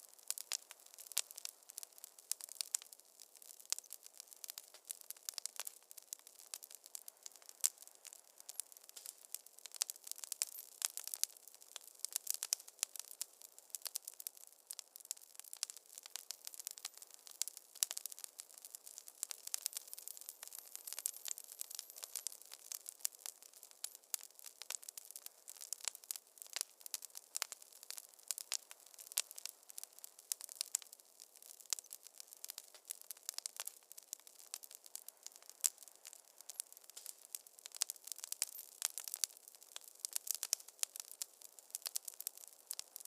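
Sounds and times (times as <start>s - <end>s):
soft hiss: 0.0s - 31.2s
wood fire crackling: 0.0s - 43.0s.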